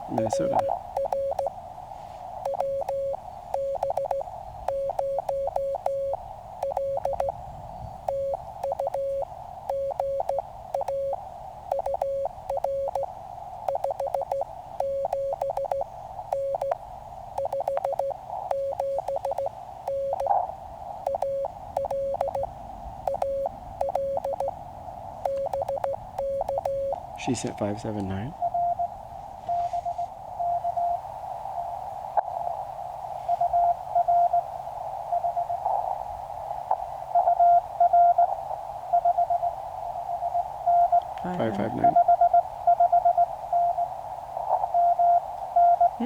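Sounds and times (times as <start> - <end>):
morse code tone: 0.0 - 1.5, 2.4 - 7.3, 8.1 - 13.1, 13.7 - 16.8, 17.4 - 20.4, 21.1 - 22.5, 23.1 - 24.5, 25.2 - 27.0, 28.3 - 28.9, 29.5 - 31.0, 33.3 - 34.4, 37.2 - 38.3, 40.2 - 43.9, 44.7 - 46.0
receiver hiss: 0.0 - 46.0.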